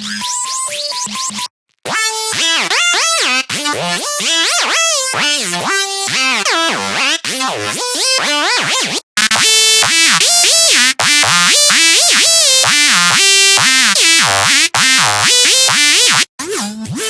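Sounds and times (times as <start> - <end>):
buzzy synth bass sliding: 9.2 - 16.3.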